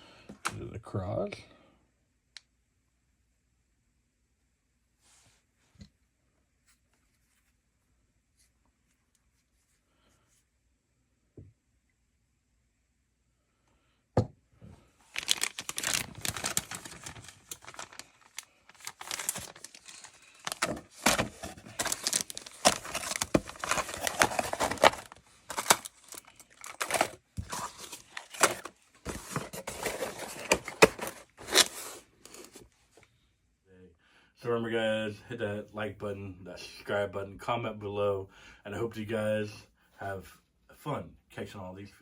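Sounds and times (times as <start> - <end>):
plastic packaging crinkling: 15.0 - 32.6.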